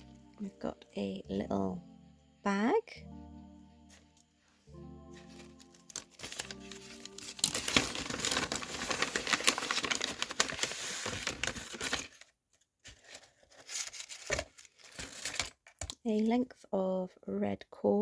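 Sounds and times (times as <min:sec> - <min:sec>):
packaging bag crinkling: 0:05.1 - 0:12.3, 0:12.9 - 0:15.6.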